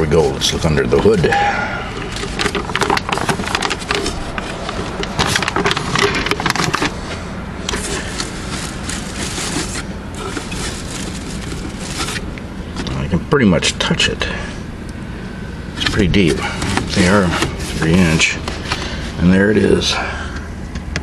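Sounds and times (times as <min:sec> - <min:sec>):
cardboard and paper crinkling: 0:02.0 - 0:07.1, 0:07.7 - 0:12.3, 0:15.9 - 0:19.0
cardboard tearing: 0:07.7 - 0:12.3.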